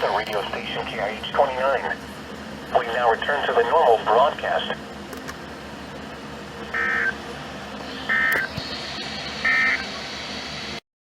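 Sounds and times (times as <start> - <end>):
radio broadcast hiss: 0.0 - 2.0, 2.7 - 4.8.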